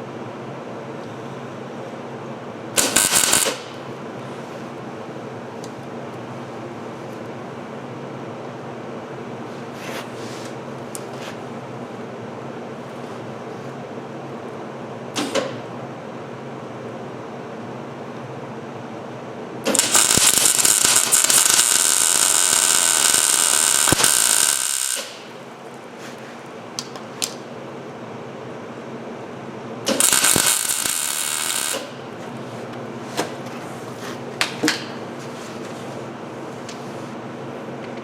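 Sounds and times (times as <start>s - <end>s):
welding arc crackling: 2.8s - 3.9s, 19.7s - 25.4s, 29.9s - 32.1s.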